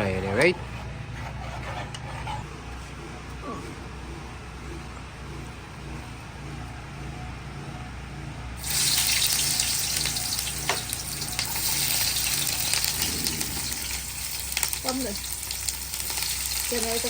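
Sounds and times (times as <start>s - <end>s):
low steady hum: 0.0s - 17.0s
food sizzling in hot oil: 8.6s - 17.0s.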